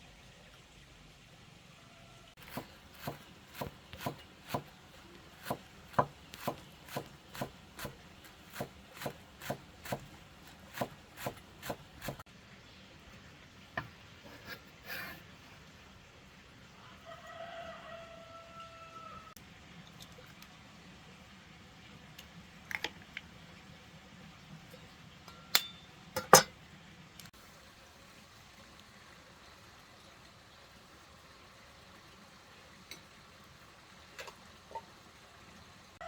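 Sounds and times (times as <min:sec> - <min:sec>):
knife chopping on wooden board: 0:02.4 - 0:12.2.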